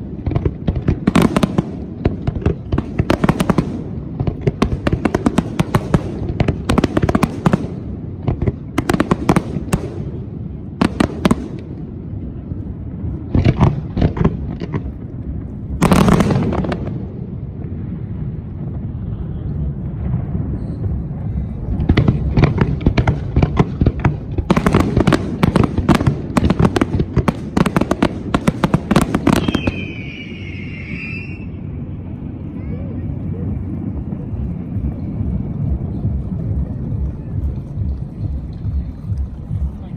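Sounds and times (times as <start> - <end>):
fireworks crackling: 0.0 - 39.9
firework shell bursts: 28.9 - 31.4
high whistle-like tone: 29.3 - 31.7.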